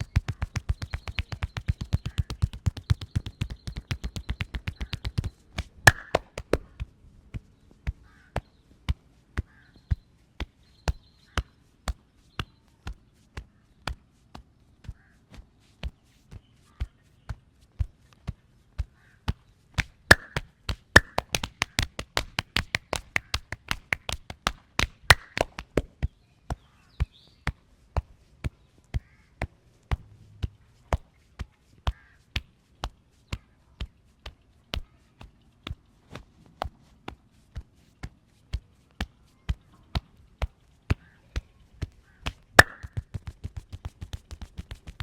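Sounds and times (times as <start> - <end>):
hand slaps on body: 0.0 - 9.6, 19.3 - 26.0, 39.9 - 45.0.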